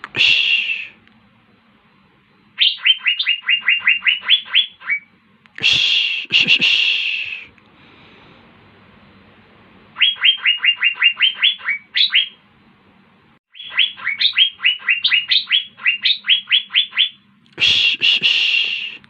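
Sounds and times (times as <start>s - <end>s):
harsh buzzy bird call: 0.0s - 1.0s, 2.6s - 7.6s, 9.9s - 12.4s, 13.5s - 19.0s
bird singing sharp down-slurred notes: 2.4s - 5.1s, 10.0s - 12.4s, 13.5s - 17.2s.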